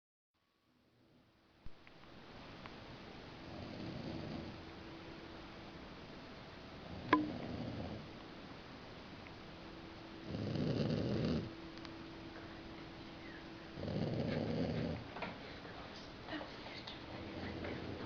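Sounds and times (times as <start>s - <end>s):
faint steady hum: 0.4s - 18.0s
person snoring: 10.3s - 11.5s.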